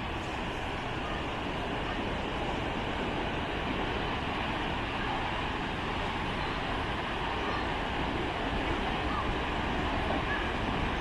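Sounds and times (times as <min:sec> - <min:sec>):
strong wind on microphone: 0:00.0 - 0:11.0.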